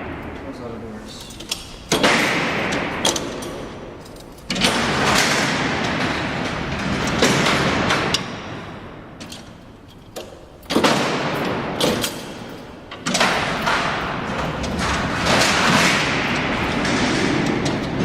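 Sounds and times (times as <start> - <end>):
steel cell doors rolling and clanging: 0.0 - 18.0
rumble: 13.1 - 18.0.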